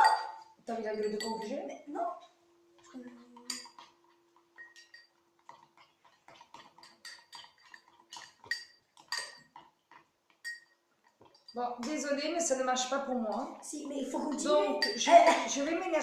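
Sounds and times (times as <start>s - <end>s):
spoons clinking against glasses: 0.0s - 1.6s, 3.4s - 9.7s, 10.3s - 11.9s, 13.2s - 15.9s.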